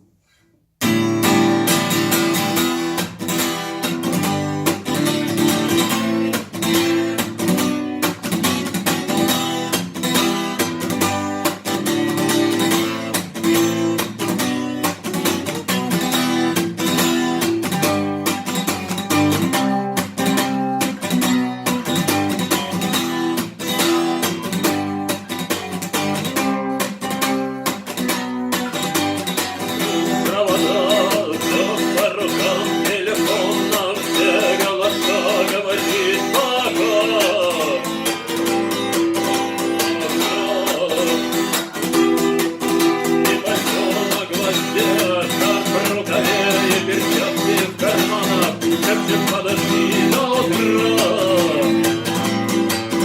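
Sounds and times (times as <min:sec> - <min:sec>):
acoustic guitar strumming chords: 0:00.8 - 0:53.0.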